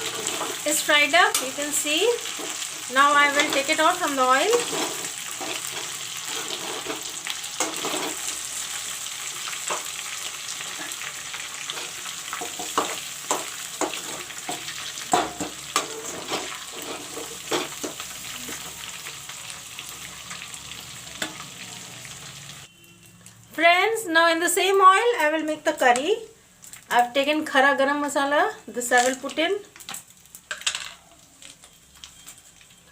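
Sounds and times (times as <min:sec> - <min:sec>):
metal spoon scraping a pan: 0:00.0 - 0:08.8, 0:10.6 - 0:18.8
chicken sizzling in oil: 0:00.0 - 0:22.7.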